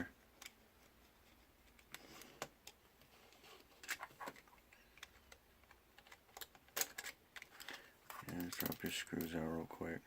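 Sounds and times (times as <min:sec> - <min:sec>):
small plastic parts clicking: 0:03.6 - 0:09.5.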